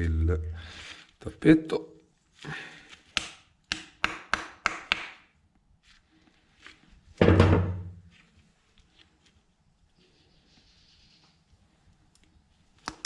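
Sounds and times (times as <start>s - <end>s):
heavy thump: 7.2s - 8.0s.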